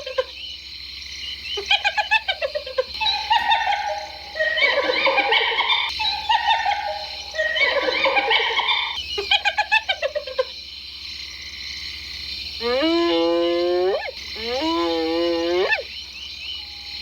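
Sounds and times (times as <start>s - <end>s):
hyenas laughing: 0.0s - 0.5s, 1.5s - 10.7s.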